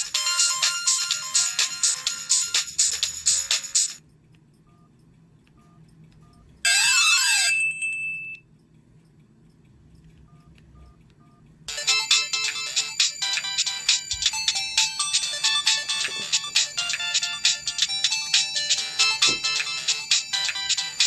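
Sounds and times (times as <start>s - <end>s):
phone ringtones: 0.0s - 2.8s, 5.6s - 8.4s, 10.3s - 21.0s.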